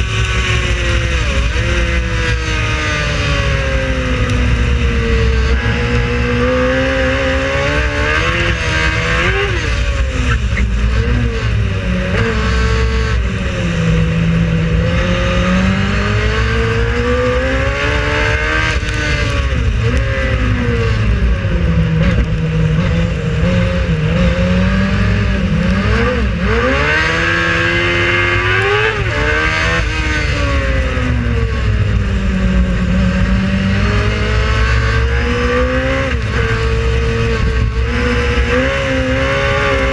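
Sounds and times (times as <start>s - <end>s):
race car engine revving: 0.0s - 39.9s.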